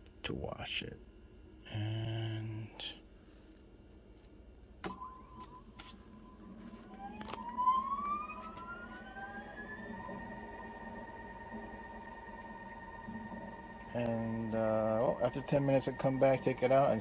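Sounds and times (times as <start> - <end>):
motor whine spinning up: 4.8 - 17.0.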